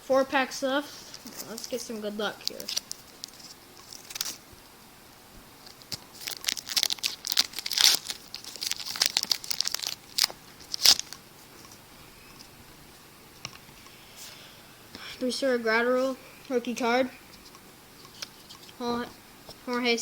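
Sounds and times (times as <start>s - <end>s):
wrapper tearing and crinkling: 2.4s - 4.4s, 5.6s - 11.2s.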